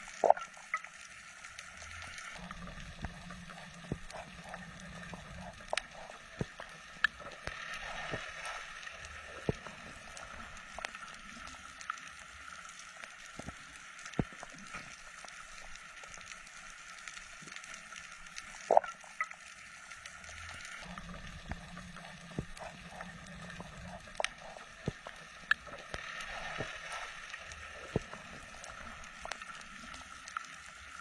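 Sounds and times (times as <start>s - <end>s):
sharp clicks and pops: 13.3s - 16.2s, 20.8s - 26.8s.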